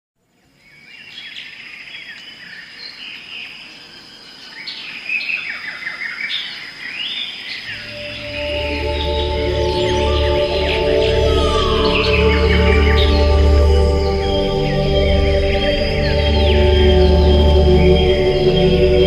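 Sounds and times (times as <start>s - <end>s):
birds chirping and trilling: 0.4s - 19.0s
high insect drone: 3.6s - 19.0s
low musical drone: 7.7s - 19.0s.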